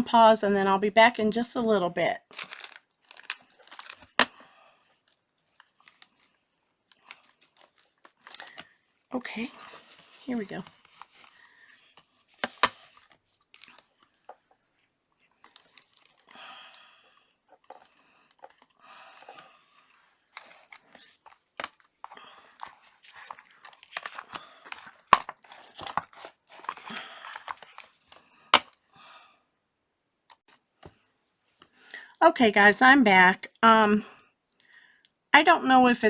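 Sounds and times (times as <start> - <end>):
crinkling and crunching handling noise: 2.2 - 28.9.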